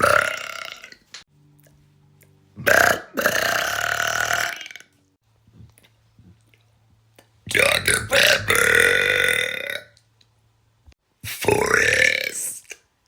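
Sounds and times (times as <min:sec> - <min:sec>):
woman burping loudly: 0:00.0 - 0:01.0, 0:02.6 - 0:04.9, 0:07.6 - 0:09.9.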